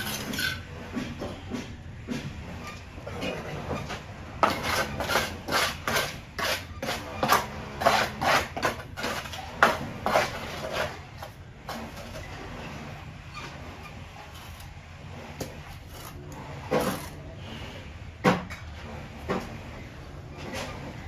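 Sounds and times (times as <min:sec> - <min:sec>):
hand tool strokes: 0:00.0 - 0:01.6, 0:02.6 - 0:12.8.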